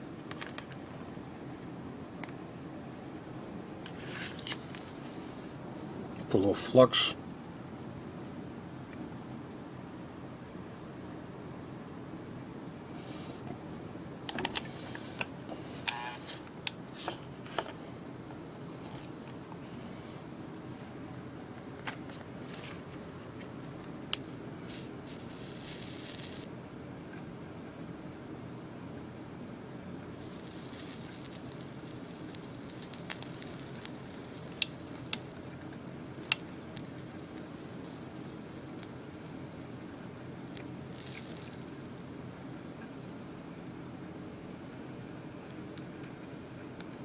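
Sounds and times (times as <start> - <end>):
low background noise: 0.0 - 47.0
steady low hum: 0.0 - 47.0
solder sizzling and crackling: 22.4 - 26.5, 29.8 - 42.7.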